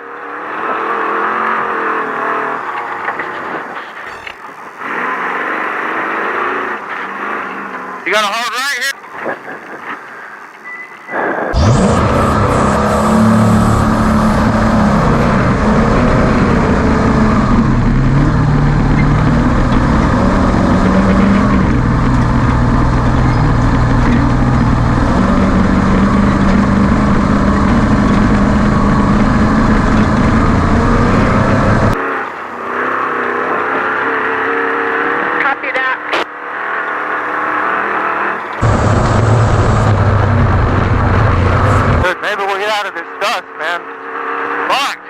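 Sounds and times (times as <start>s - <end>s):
road and chassis noise: 0.0s - 45.0s
truck engine running hard: 11.5s - 35.6s, 36.5s - 45.0s.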